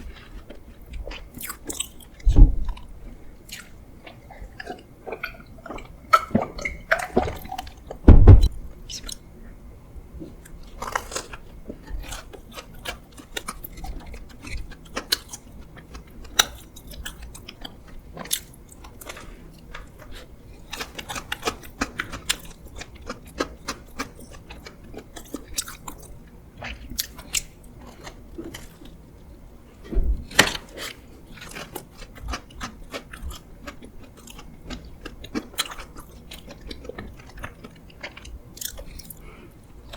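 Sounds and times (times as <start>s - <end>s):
person chewing soft food: 0.0s - 39.9s
loud knocks: 8.0s - 8.6s.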